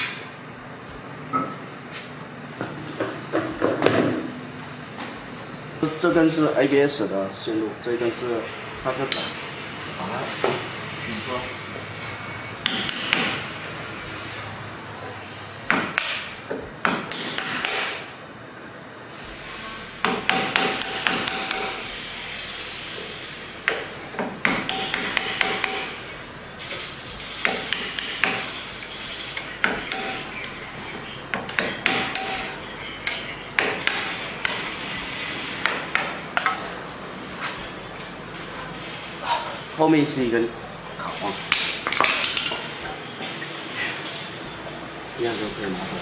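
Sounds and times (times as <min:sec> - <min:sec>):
hammer striking metal: 0:12.6 - 0:13.6, 0:15.6 - 0:18.2, 0:20.0 - 0:22.0, 0:23.6 - 0:26.2, 0:27.2 - 0:30.6, 0:31.3 - 0:34.9, 0:35.6 - 0:37.1.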